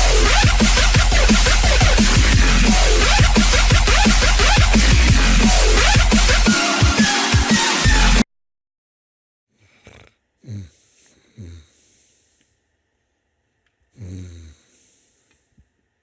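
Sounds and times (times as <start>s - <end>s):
person snoring: 0.0s - 5.4s, 9.6s - 12.3s, 13.9s - 15.3s.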